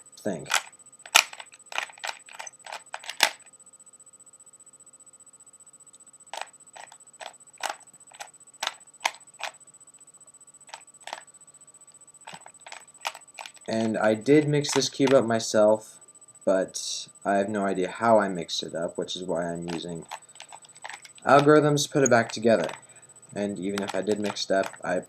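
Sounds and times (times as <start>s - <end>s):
puzzle cube plastic clicks: 0.4s - 3.5s, 6.3s - 9.6s, 10.7s - 11.2s, 12.3s - 14.0s, 14.6s - 15.2s, 19.6s - 22.8s, 23.6s - 25.0s.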